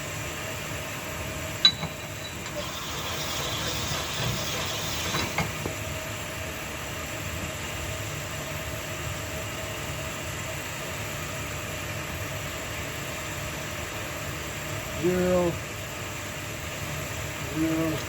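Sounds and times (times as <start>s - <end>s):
mechanical running noise: 1.2s - 6.3s.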